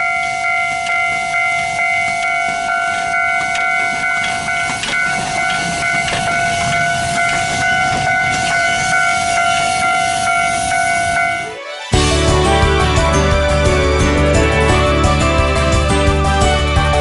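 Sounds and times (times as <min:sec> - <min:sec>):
steam hissing: 0:00.0 - 0:11.5
steam locomotive whistle: 0:00.0 - 0:17.0.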